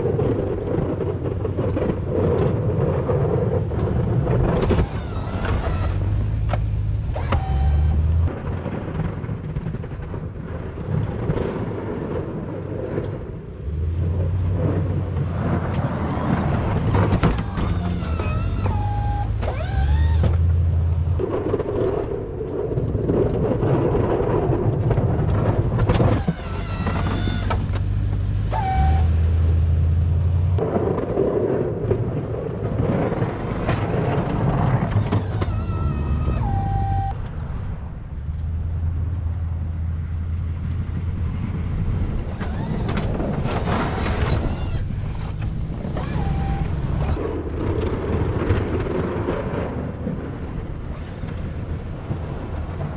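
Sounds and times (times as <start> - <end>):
vehicle engine revving: 2.1 - 8.4, 13.6 - 21.2, 25.2 - 30.6, 32.7 - 37.5, 38.2 - 47.3
whining tone stepping down: 3.5 - 8.4, 13.6 - 21.2, 25.3 - 30.6, 32.7 - 37.5, 38.2 - 47.2, 50.7 - 52.4.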